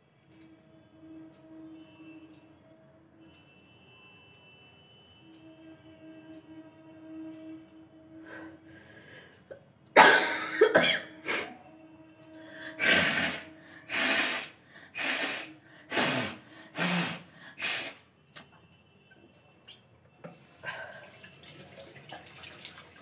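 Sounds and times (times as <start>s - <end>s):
woman blowing air through nose: 12.5s - 18.1s
woman sneezing: 12.8s - 18.0s.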